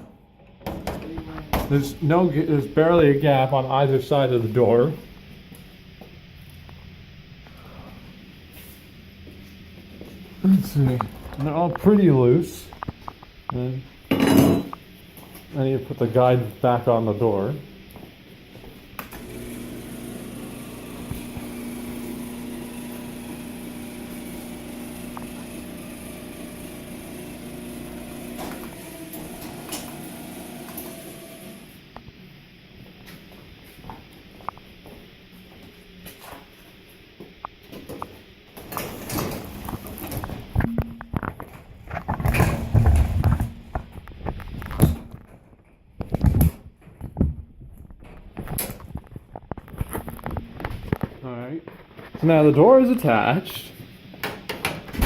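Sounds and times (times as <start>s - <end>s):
small motor humming: 19.1s - 31.8s.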